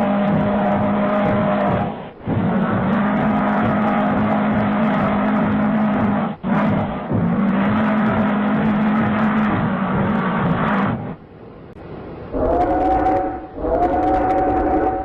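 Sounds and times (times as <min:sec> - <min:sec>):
diesel locomotive horn blasts: 0:12.3 - 0:15.0.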